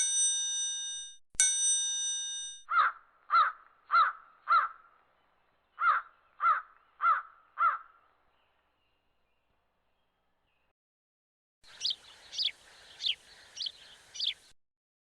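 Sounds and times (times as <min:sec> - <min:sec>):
ringing chime: 0:00.0 - 0:02.7
harsh caw-like animal calls: 0:02.7 - 0:04.9, 0:05.8 - 0:08.0.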